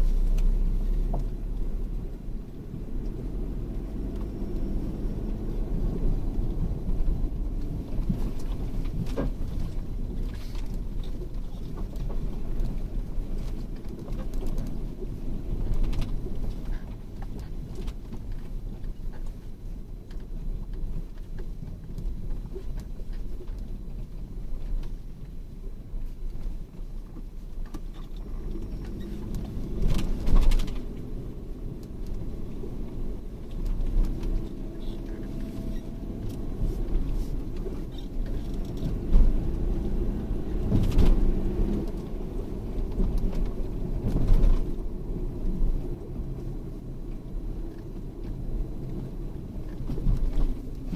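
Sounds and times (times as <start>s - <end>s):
vehicle engine and road rumble: 0.0s - 50.9s
vehicle knocks and jolts: 40.6s - 42.0s.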